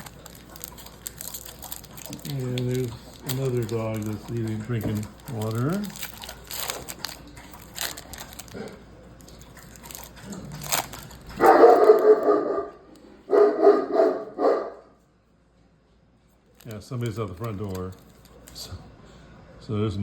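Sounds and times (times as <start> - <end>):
dog barking: 11.4 - 15.0.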